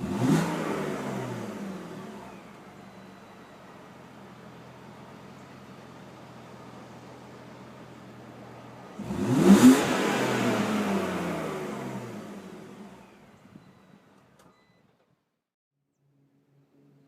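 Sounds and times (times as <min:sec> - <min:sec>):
car engine revving: 0:00.0 - 0:02.8, 0:08.8 - 0:13.4.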